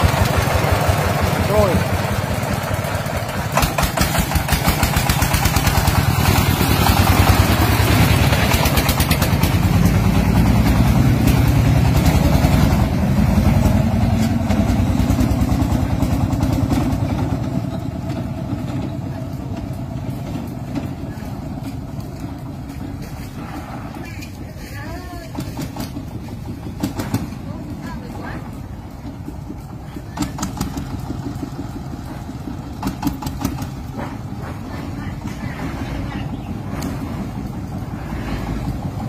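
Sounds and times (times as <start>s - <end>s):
diesel engine chugging: 0.0s - 39.0s.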